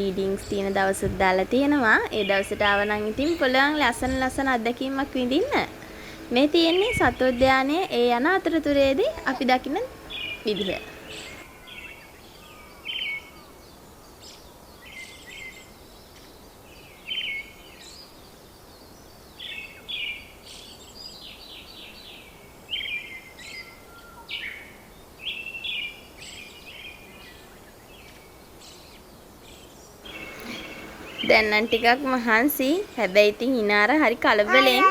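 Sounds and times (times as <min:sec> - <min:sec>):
birds chattering: 0:00.0 - 0:11.4, 0:30.1 - 0:34.9
steady background hiss: 0:00.0 - 0:34.9.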